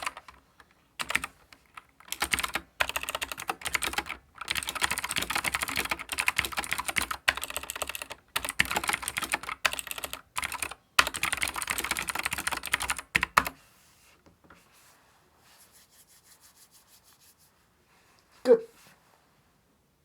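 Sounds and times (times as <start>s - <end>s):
fast typing on mechanical keyboard: 0.0s - 0.4s, 1.0s - 13.6s.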